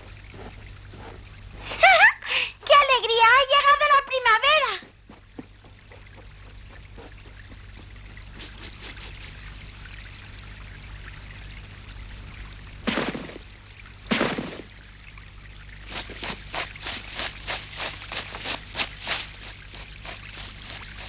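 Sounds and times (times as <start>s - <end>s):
meltwater trickling: 0.0s - 3.2s, 4.9s - 21.0s
loud sudden sounds: 12.8s - 14.8s.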